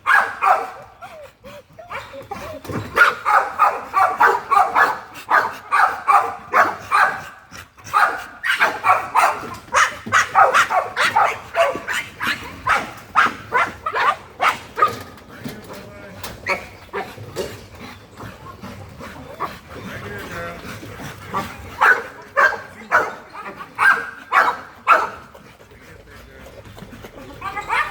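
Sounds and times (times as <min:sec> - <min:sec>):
dog barking: 0:00.0 - 0:01.1, 0:02.9 - 0:15.0, 0:21.8 - 0:25.3, 0:27.4 - 0:27.9.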